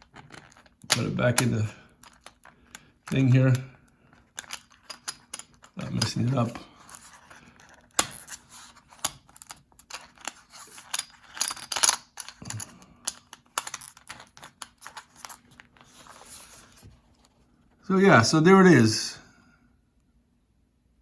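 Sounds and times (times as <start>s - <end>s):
coins clicking in holder: 4.3s - 7.1s, 7.7s - 15.4s.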